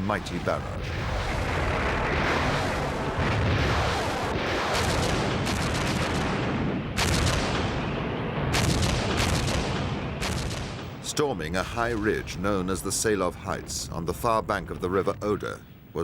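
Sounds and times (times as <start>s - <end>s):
artillery guns firing: 0.8s - 11.0s.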